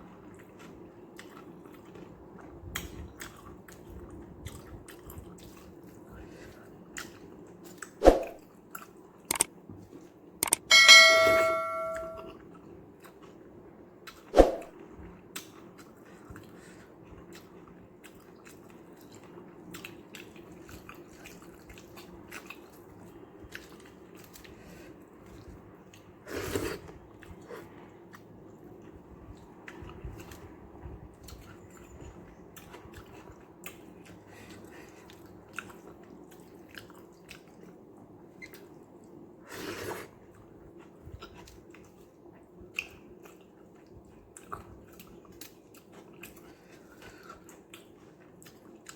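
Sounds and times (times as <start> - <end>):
person chewing: 0.2 - 8.0, 8.6 - 9.5, 10.4 - 10.6, 15.3 - 30.5, 32.6 - 37.8, 39.8 - 48.9.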